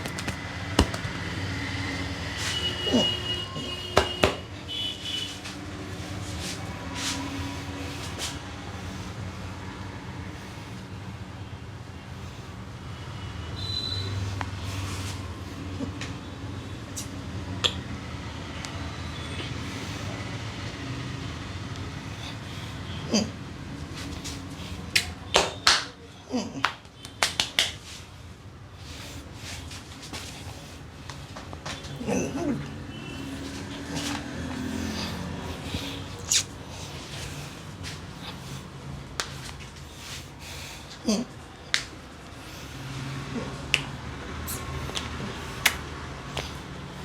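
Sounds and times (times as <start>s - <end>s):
hands rubbing skin and hair: 0.0s - 1.2s
background traffic rumble: 0.0s - 47.0s
sharp snap: 44.5s - 46.5s.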